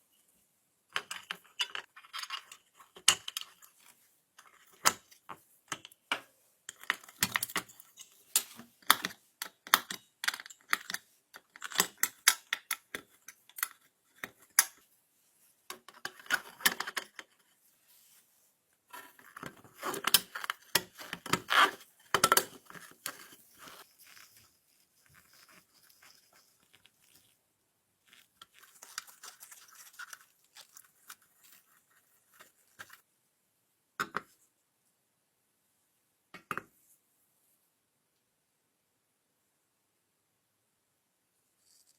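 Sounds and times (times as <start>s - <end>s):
clicks and taps of small parts: 5.7s - 14.8s.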